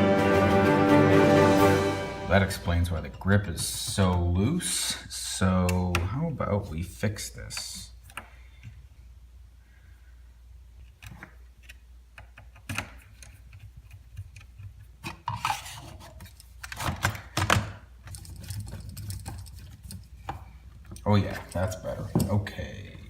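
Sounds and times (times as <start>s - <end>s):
rubbing and scraping: 13.0s - 17.0s.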